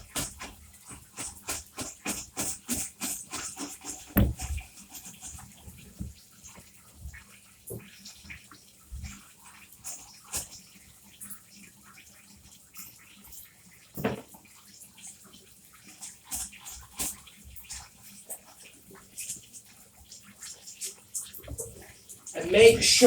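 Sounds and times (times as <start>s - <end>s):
running water: 0.0s - 23.0s
loud knock: 4.2s - 4.6s.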